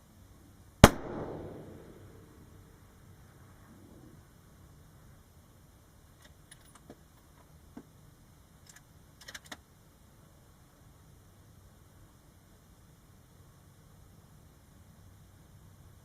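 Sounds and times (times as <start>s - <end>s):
low steady rumble: 0.0s - 16.0s
rifle bolt clicking and rattling: 8.6s - 9.6s.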